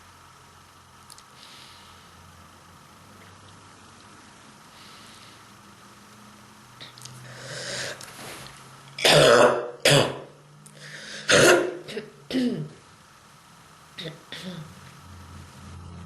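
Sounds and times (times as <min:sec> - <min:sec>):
person coughing hard: 0:09.0 - 0:10.3, 0:11.2 - 0:12.8
drawn breath: 0:10.8 - 0:11.3.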